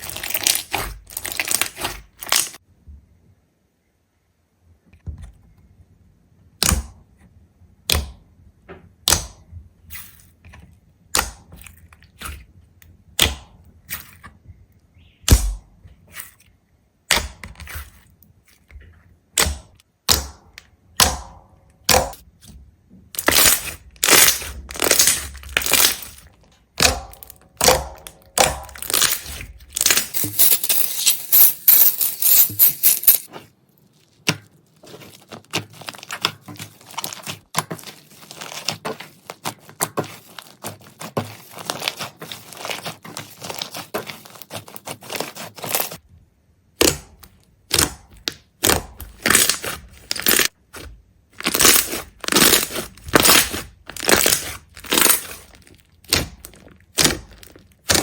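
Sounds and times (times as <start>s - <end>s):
sharp cracks and snaps: 23.2s - 30.1s.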